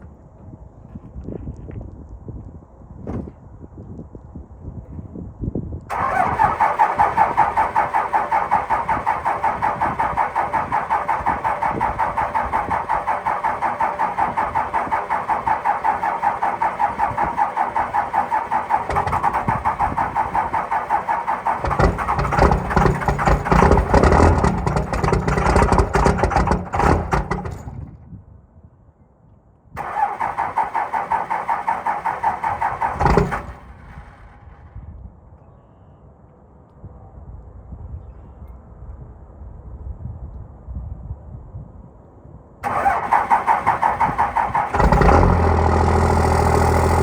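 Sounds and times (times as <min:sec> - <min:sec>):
diesel engine cranking and starting: 0:05.9 - 0:27.9, 0:29.8 - 0:34.6, 0:42.6 - 0:47.0.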